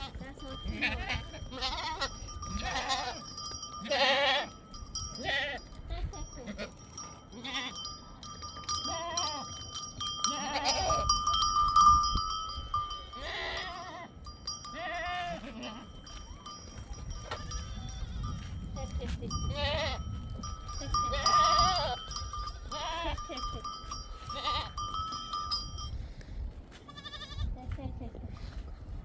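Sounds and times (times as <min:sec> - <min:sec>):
sheep bleating: 0:00.0 - 0:04.5, 0:07.4 - 0:07.8, 0:08.8 - 0:09.6, 0:10.2 - 0:11.0, 0:13.1 - 0:14.1, 0:14.7 - 0:15.9, 0:22.7 - 0:23.4, 0:24.2 - 0:24.8, 0:26.9 - 0:27.4
animal bells ringing: 0:00.0 - 0:26.2.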